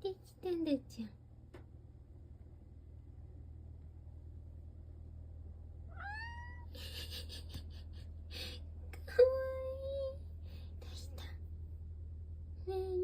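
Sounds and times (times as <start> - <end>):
cat meowing: 5.9 - 6.7.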